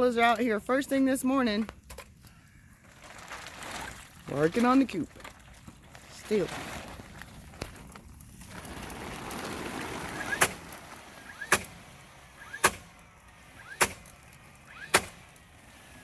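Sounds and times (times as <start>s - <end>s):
hammer strikes: 12.6s - 12.9s, 13.8s - 14.0s.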